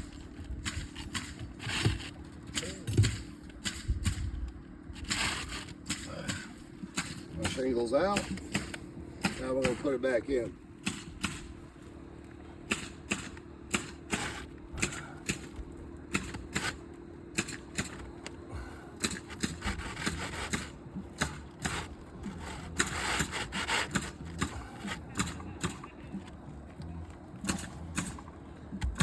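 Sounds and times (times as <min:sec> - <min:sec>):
shingle scraping: 0:00.0 - 0:03.4, 0:04.9 - 0:10.0, 0:12.7 - 0:15.5, 0:16.1 - 0:18.2, 0:19.0 - 0:26.4.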